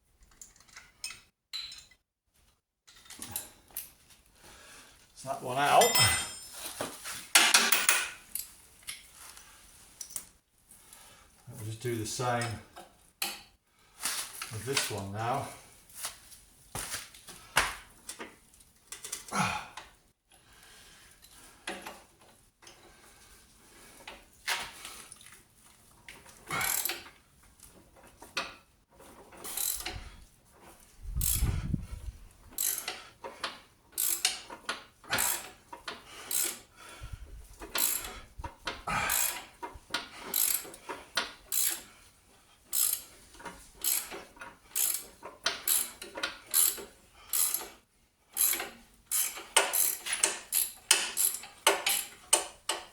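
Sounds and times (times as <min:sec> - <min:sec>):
ratchet wrench clicking: 0:26.6 - 0:27.0, 0:29.5 - 0:29.9, 0:31.2 - 0:31.5, 0:32.6 - 0:32.9, 0:34.0 - 0:34.4, 0:35.1 - 0:35.5, 0:36.3 - 0:36.6, 0:37.7 - 0:38.1, 0:39.1 - 0:39.4, 0:40.3 - 0:40.7, 0:41.5 - 0:41.8, 0:42.7 - 0:43.0, 0:43.8 - 0:44.2, 0:44.8 - 0:47.7, 0:48.4 - 0:52.8.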